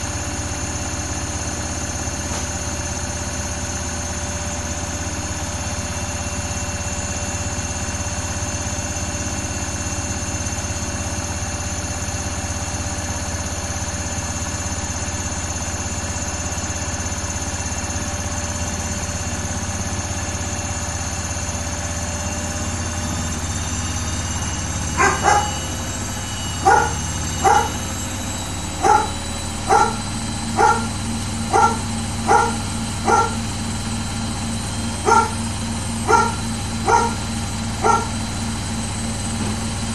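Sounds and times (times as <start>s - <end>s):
washing machine hum and whine: 0.0s - 39.9s
dog barking: 24.9s - 25.8s, 26.6s - 27.9s, 28.8s - 33.5s, 35.0s - 38.2s.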